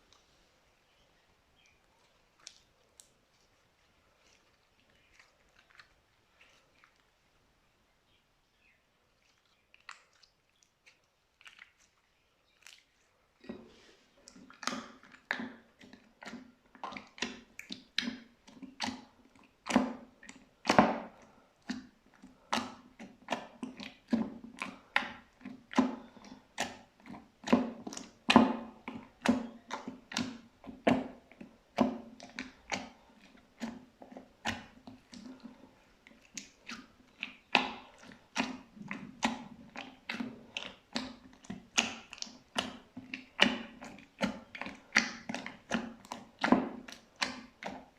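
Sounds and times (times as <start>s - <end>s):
slime clicking and popping: 36.2s - 47.8s.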